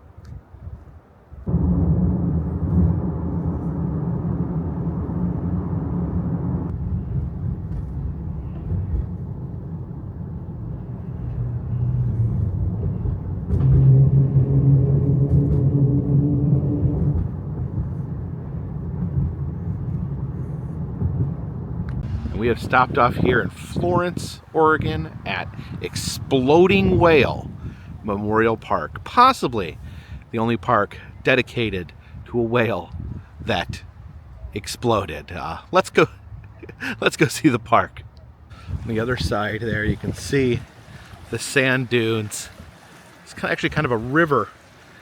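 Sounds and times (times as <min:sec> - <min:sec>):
road rumble: 0:01.4 - 0:30.4, 0:32.9 - 0:45.0
car engine: 0:01.5 - 0:22.4.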